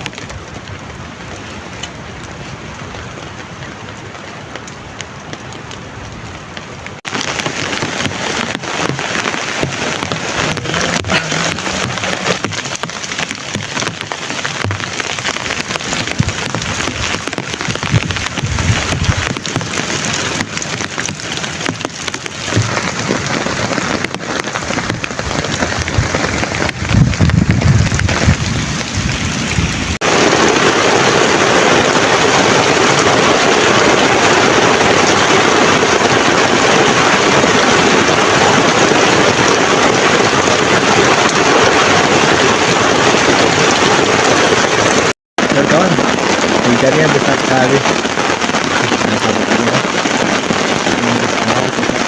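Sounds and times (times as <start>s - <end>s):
heavy rain falling: 0.0s - 52.0s
low thuds: 7.3s - 30.0s.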